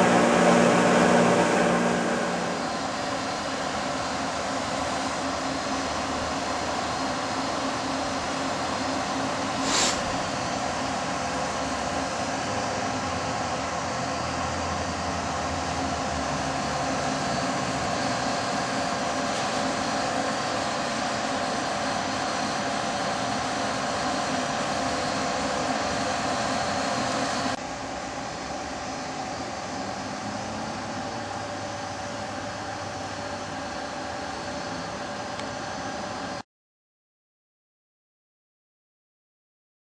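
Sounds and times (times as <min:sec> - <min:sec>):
router spindle whining: 0:00.0 - 0:03.2.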